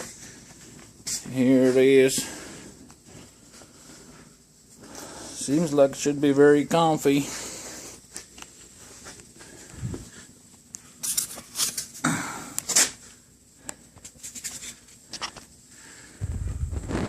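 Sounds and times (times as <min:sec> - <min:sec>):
scrapes and rustles: 0:14.0 - 0:15.4.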